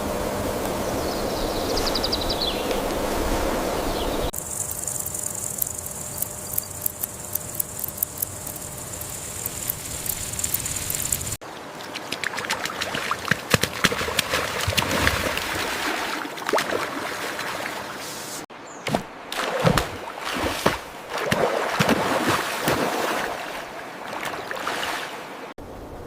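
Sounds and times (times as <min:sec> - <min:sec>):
high insect drone: 0:03.4 - 0:11.4
clicking sound: 0:04.4 - 0:11.4
sharp ticks: 0:04.4 - 0:11.4.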